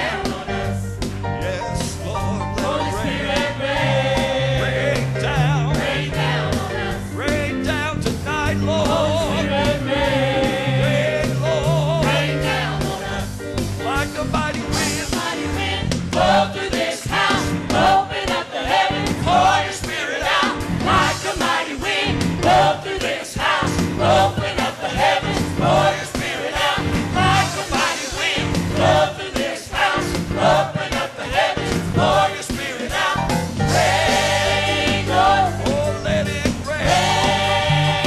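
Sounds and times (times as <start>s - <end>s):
gospel choir singing: 0.0s - 38.0s.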